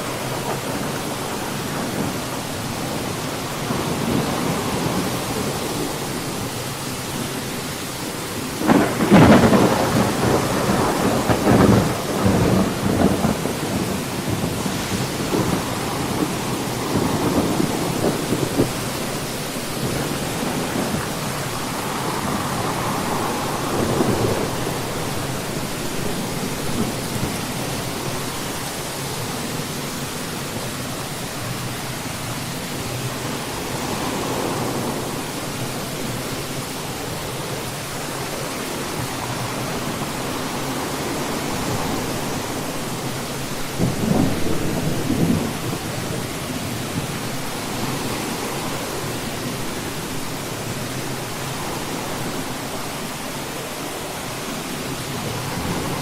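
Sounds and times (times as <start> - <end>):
rain hiss: 0.0 - 56.0
thunder rumbles: 8.2 - 31.7, 37.7 - 49.5.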